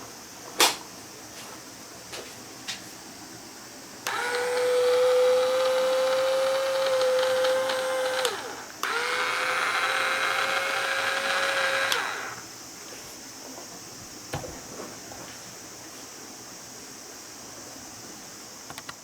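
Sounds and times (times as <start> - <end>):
sprayer pump motor whining: 4.0 - 12.5.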